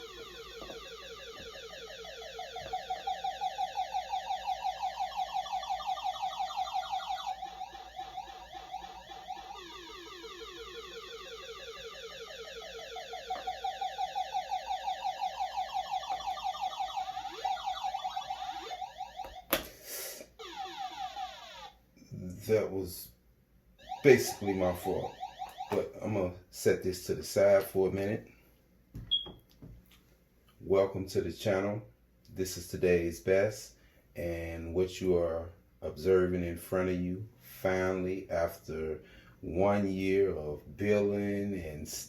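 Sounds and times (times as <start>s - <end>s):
electronic alarm pulsing tone: 0.0s - 19.5s, 20.4s - 21.8s, 23.8s - 25.8s.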